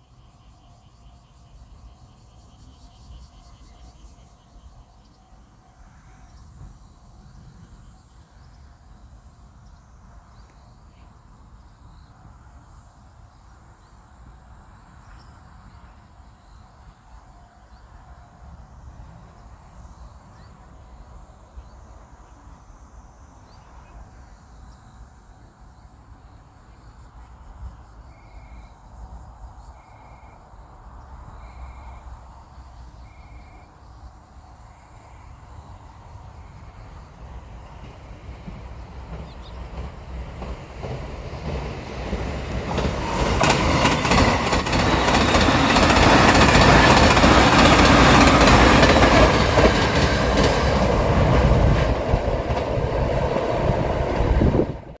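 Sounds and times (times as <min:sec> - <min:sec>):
insects chirring: 0:31.3 - 0:54.0
low wind rumble: 0:35.8 - 0:55.0.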